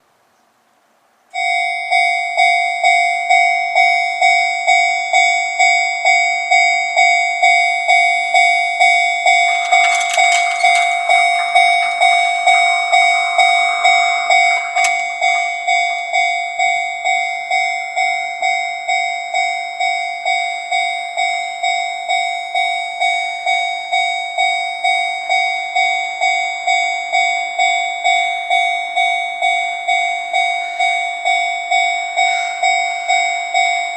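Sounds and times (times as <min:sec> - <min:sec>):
level crossing warning bell: 0:01.3 - 0:33.9
click: 0:09.5 - 0:15.5.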